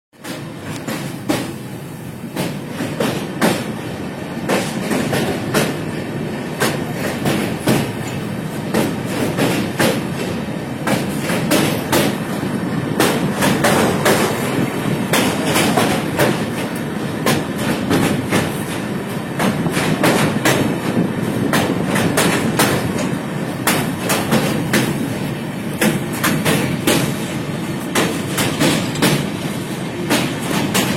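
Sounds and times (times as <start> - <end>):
train rumbling on track: 0.2 - 30.9
wheels clicking and clacking: 19.4 - 29.4.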